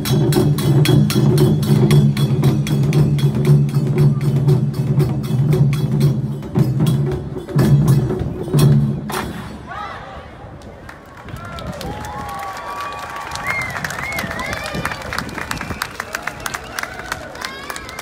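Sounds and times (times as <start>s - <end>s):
clicking percussion beat: 0.0s - 9.5s.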